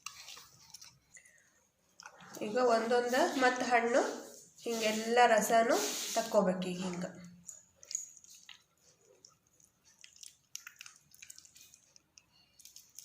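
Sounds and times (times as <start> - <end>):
wet squishes and drips: 0.0 - 2.5, 6.8 - 13.0.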